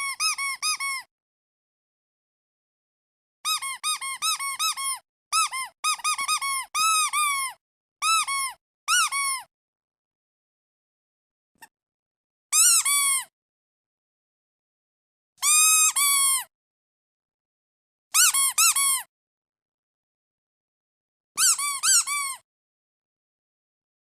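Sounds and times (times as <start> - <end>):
squeaky duck toy squeaking: 0.0 - 1.1, 3.4 - 9.5, 12.5 - 13.3, 15.4 - 16.5, 18.2 - 19.1, 21.4 - 22.4.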